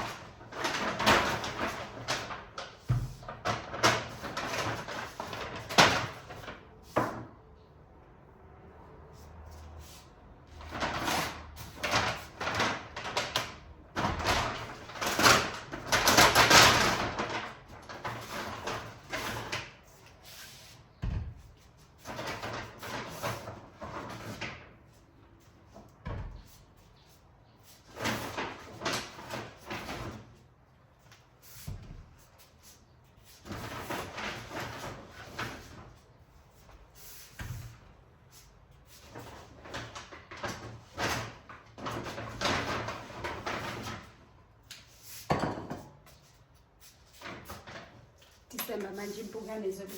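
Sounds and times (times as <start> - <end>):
packaging rustling and clattering: 0.0 - 6.8, 10.5 - 20.2, 38.9 - 44.3.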